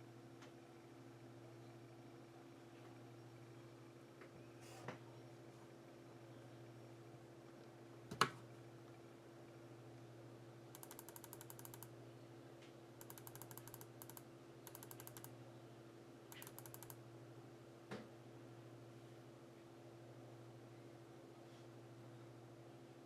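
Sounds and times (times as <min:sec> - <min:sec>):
rapid small clicks: 0:10.7 - 0:11.9, 0:13.0 - 0:15.4, 0:16.3 - 0:17.0.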